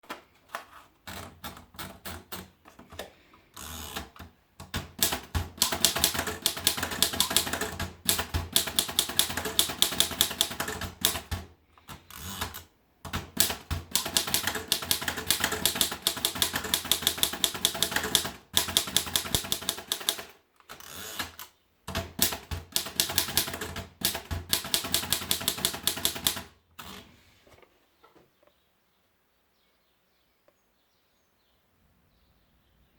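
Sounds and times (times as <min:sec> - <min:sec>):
typewriter key strikes: 0:03.9 - 0:20.3, 0:21.2 - 0:26.5.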